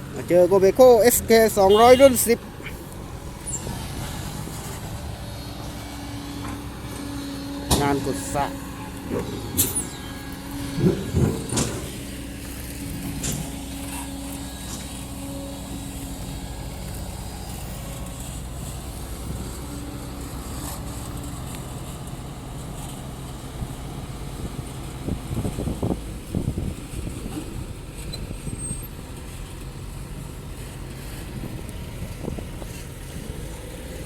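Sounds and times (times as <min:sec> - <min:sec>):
diesel engine running: 0:00.0 - 0:34.0
clattering: 0:10.7 - 0:13.5.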